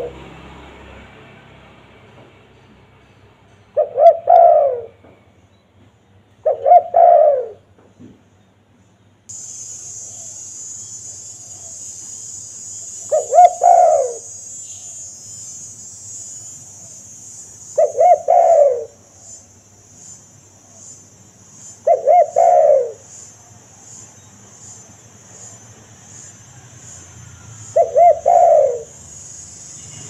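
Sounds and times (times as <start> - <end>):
dove cooing: 0.0 - 0.2, 3.8 - 5.0, 6.4 - 7.6, 12.9 - 14.4, 17.7 - 19.0, 21.8 - 23.1, 27.7 - 29.1
steady high hiss: 9.3 - 30.0.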